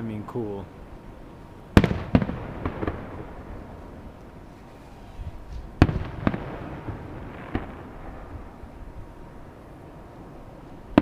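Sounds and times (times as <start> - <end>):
firework booms echoing: 1.8 - 4.1, 5.3 - 8.8
small firework pops: 5.5 - 6.6, 7.2 - 7.9.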